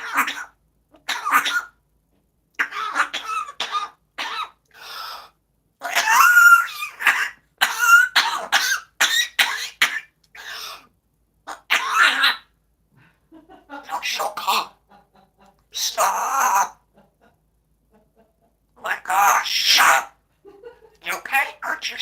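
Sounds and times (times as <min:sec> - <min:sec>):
parrot mimicking coughing: 0:00.0 - 0:01.8, 0:02.6 - 0:10.9, 0:11.5 - 0:12.5, 0:13.8 - 0:14.8, 0:18.8 - 0:20.2, 0:21.0 - 0:22.0.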